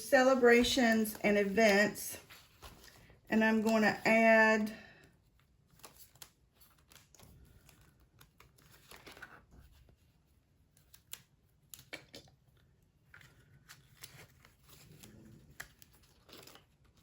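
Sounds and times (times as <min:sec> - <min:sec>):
banknotes rustling: 0:00.0 - 0:11.2.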